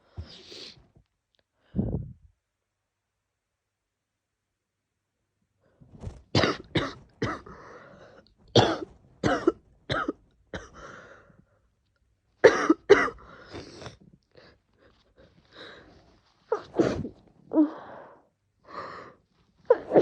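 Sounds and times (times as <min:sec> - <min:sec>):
woman coughing: 0:08.6 - 0:10.8, 0:12.4 - 0:13.2.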